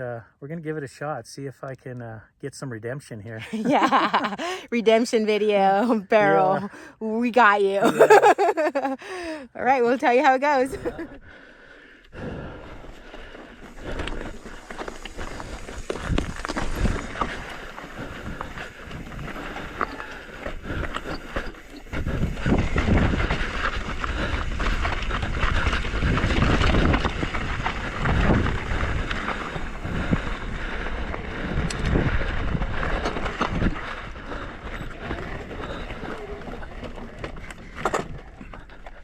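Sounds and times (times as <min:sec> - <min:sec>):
wind buffeting microphone: 0:12.2 - 0:38.7
bike rumbling over rocks: 0:12.7 - 0:39.0.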